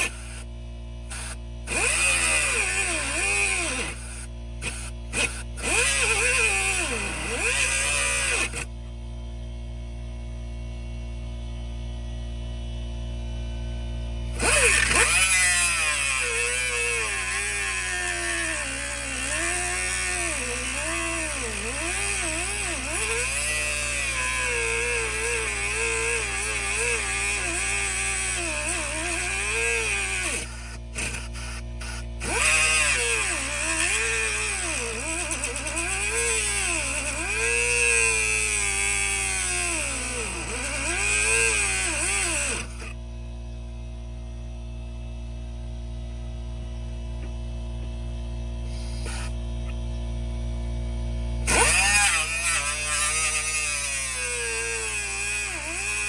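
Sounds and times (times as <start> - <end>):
power tool whining: 0.0 - 8.8, 14.2 - 43.0, 48.6 - 50.0, 51.2 - 56.0.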